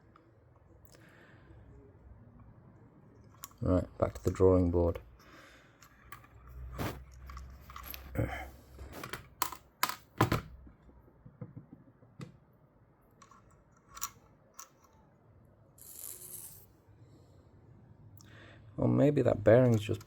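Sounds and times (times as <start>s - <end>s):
small parts clicking and tapping: 3.2s - 8.1s, 13.2s - 15.0s.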